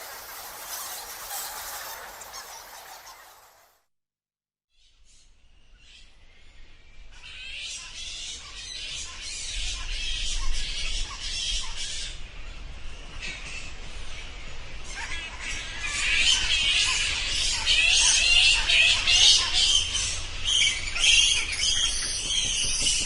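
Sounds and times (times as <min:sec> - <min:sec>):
bats squeaking: 0:00.4 - 0:03.5.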